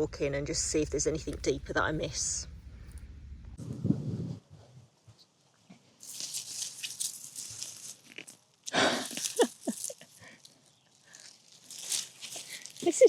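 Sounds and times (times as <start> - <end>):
plants and soil rustling: 5.7 - 13.0.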